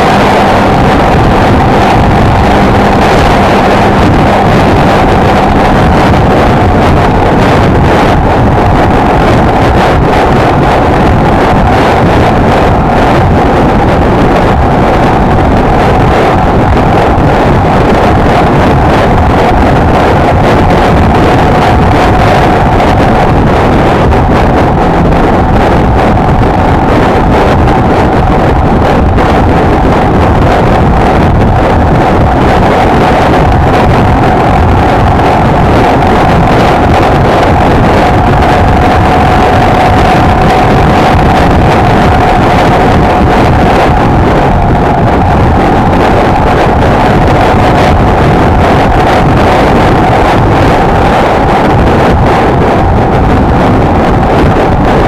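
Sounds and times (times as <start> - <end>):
motorcycle engine cruising: 0.0 - 11.0
wind buffeting microphone: 0.0 - 55.0.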